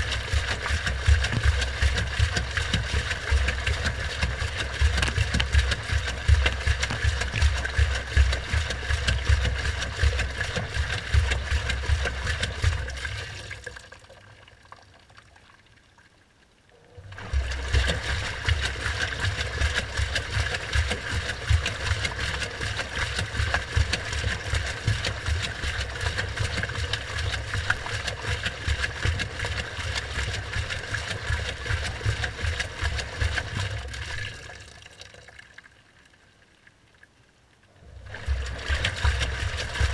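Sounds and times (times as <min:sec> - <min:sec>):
washing machine motor humming: 0:00.0 - 0:13.0, 0:17.0 - 0:33.7, 0:37.9 - 0:39.9
water sloshing in drum: 0:00.0 - 0:15.6, 0:16.8 - 0:35.7, 0:37.7 - 0:39.9.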